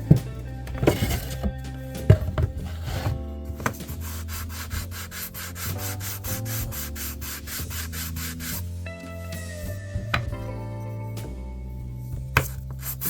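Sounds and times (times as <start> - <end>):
sandpaper rasping on wood: 2.7 - 8.7, 12.4 - 13.0.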